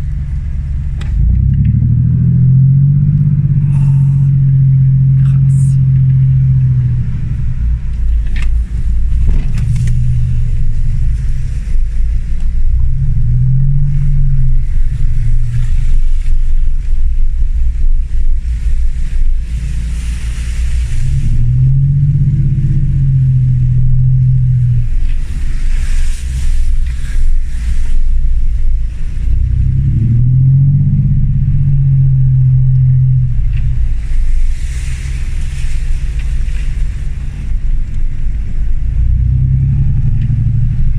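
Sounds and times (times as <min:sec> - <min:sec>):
diesel engine revving: 0:00.0 - 0:40.9
rushing hissing noise: 0:03.5 - 0:17.1.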